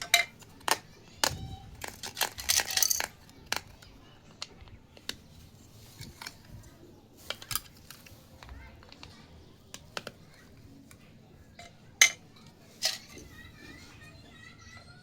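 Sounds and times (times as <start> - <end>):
plastic toy pieces clicking: 0.0 - 5.2, 7.2 - 10.2.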